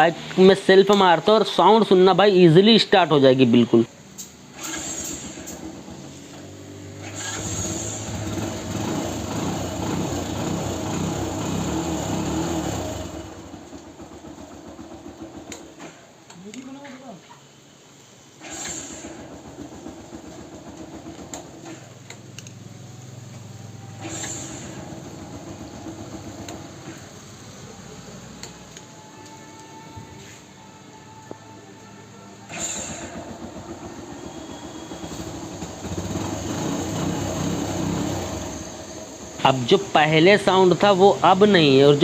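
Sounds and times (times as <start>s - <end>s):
starter motor cranking engine: 4.2s - 16.6s, 18.3s - 29.7s, 31.8s - 42.0s
motorcycle engine idling: 5.2s - 16.2s, 19.1s - 28.8s, 32.0s - 42.0s.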